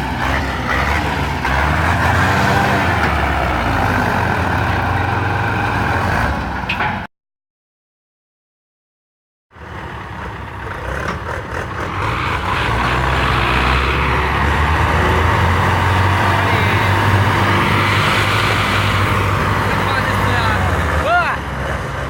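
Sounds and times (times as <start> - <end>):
diesel tractor engine under load: 0.0 - 7.1, 9.6 - 22.0
broad rushing noise: 13.2 - 21.4.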